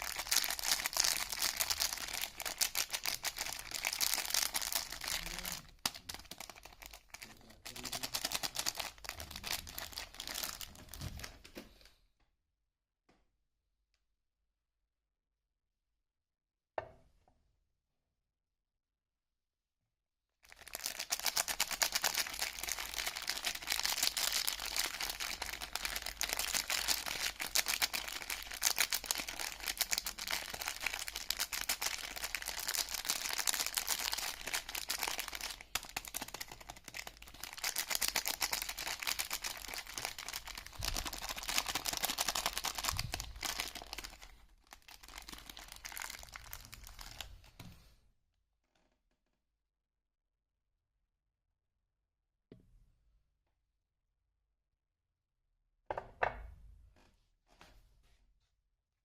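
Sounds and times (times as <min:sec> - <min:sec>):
packaging crinkling and tearing: 0:00.0 - 0:11.5, 0:20.5 - 0:47.5.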